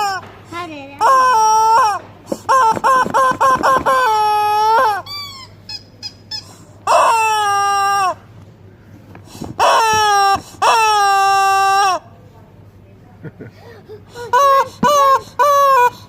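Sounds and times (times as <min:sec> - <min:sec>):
toy ducks squawking: 0:01.0 - 0:08.2, 0:09.6 - 0:12.0, 0:14.2 - 0:16.0.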